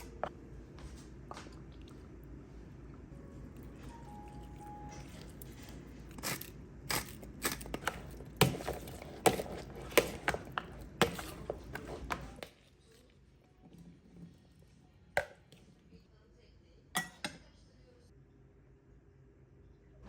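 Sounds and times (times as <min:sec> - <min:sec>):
steady low hum: 0:00.0 - 0:12.4
sharp knocks and scrapes: 0:05.2 - 0:12.6.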